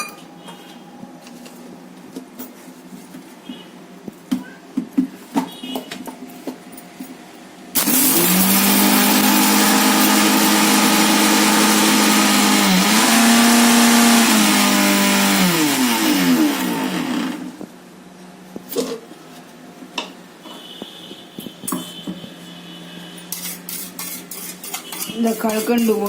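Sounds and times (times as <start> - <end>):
mixer grinder motor whining: 7.8 - 17.7.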